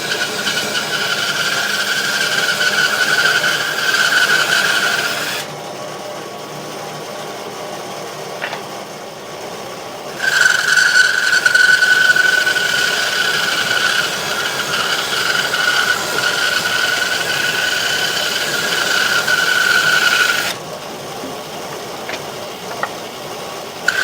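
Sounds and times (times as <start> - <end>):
bandsaw cutting wood: 0.0 - 5.5, 10.1 - 20.6.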